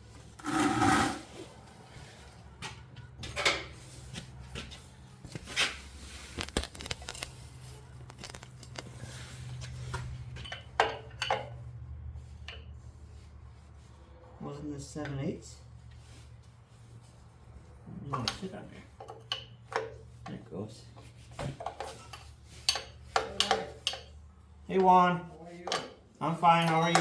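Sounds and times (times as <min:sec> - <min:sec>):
metal tools clanking and scraping: 0:10.0 - 0:11.6, 0:18.1 - 0:20.2, 0:20.9 - 0:24.2, 0:25.7 - 0:27.0.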